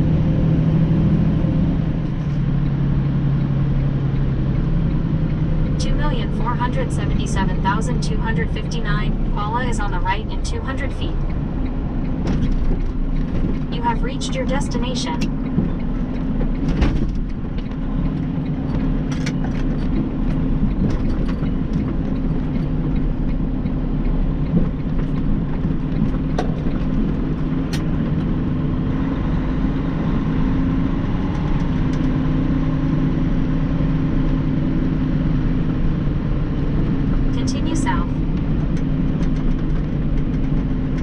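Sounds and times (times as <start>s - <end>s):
truck diesel engine droning: 0.0s - 41.0s.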